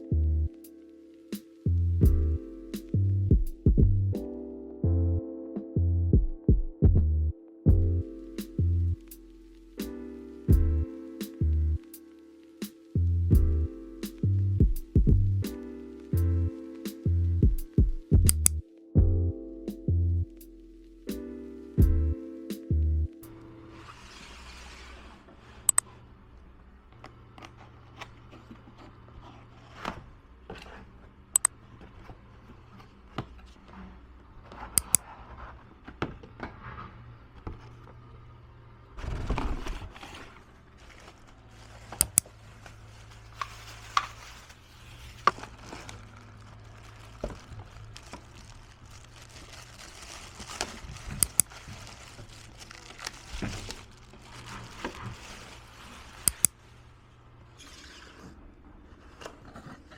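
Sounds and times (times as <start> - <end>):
low steady hum: 5.8 - 12.4
rustling of handled objects: 39.3 - 57.1.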